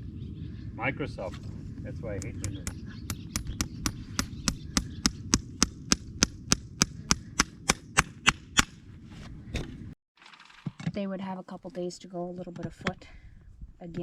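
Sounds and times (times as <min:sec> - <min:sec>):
low steady rumble: 0:00.0 - 0:10.0.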